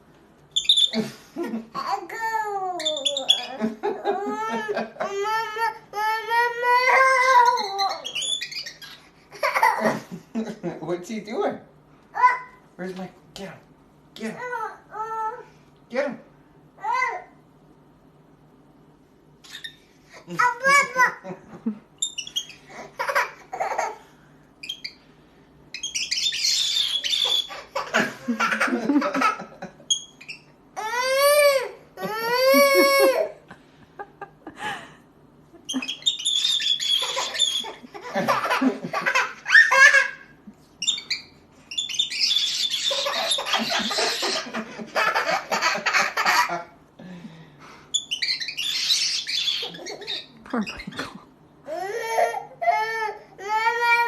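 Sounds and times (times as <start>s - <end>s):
parrot squawking: 0.6s - 1.0s, 2.2s - 3.6s, 6.5s - 9.1s, 25.7s - 28.0s, 35.7s - 40.2s, 40.8s - 46.5s, 48.0s - 51.0s
baby laughing and fussing: 30.8s - 33.4s.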